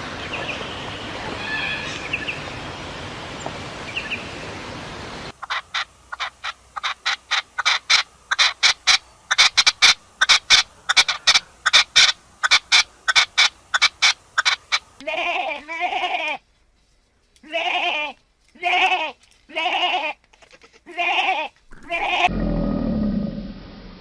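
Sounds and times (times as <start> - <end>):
bird calling rapidly: 5.4 - 14.9.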